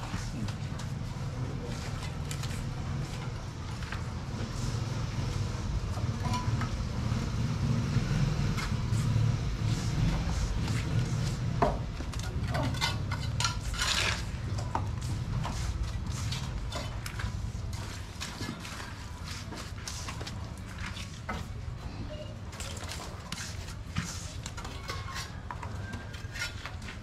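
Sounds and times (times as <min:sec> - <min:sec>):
hand tools clinking and scraping: 0:06.0 - 0:06.8, 0:09.7 - 0:21.6, 0:22.8 - 0:27.0.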